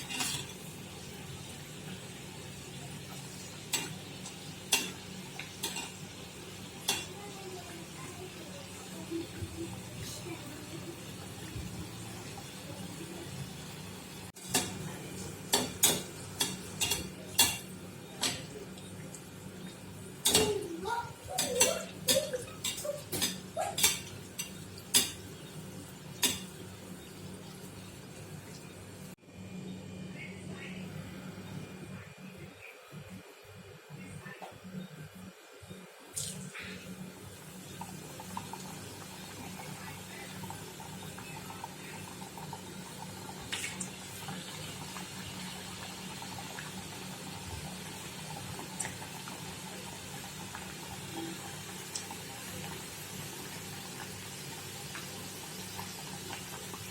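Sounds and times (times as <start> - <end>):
utensils clinking against dishes: 0.0 - 0.7, 3.7 - 6.0, 14.4 - 14.9, 15.5 - 18.6, 20.2 - 25.4, 26.2 - 26.6
hot oil sizzling and bubbling: 0.0 - 29.2, 36.1 - 56.9.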